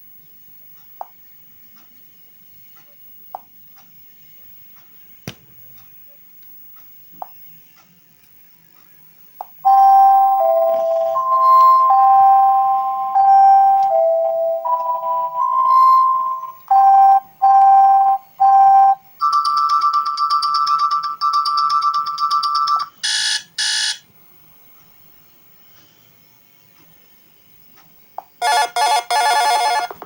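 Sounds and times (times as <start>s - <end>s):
bright bell-like bursts: 9.7s - 19.0s
short electronic melody: 9.7s - 19.0s
trilling two-note electronic ring: 9.7s - 19.0s
evenly spaced beeps: 9.7s - 24.0s.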